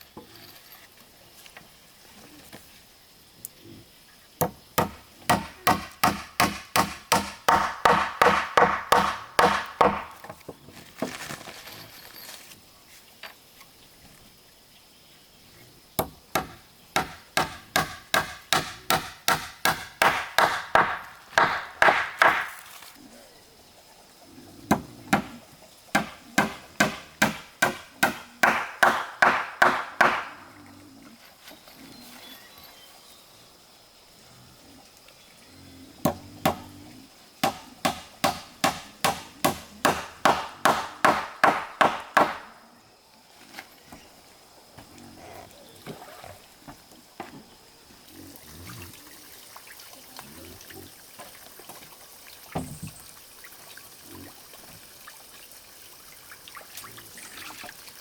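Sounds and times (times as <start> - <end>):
hammer blows on wood: 4.4 - 10.2, 16.0 - 22.6, 26.0 - 30.4, 37.4 - 42.5.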